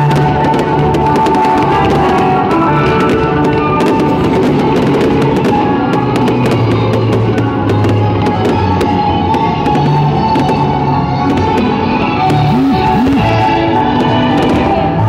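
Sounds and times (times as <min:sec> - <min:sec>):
music with drums and bass: 0:12.2 - 0:14.7.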